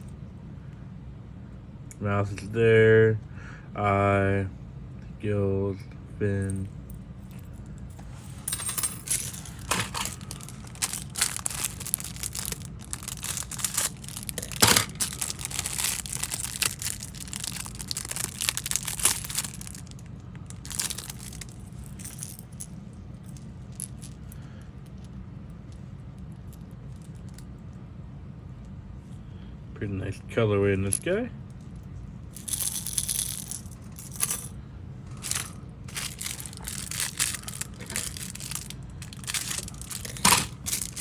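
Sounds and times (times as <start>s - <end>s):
plastic packaging crinkling: 9.0s - 22.3s, 35.1s - 41.0s.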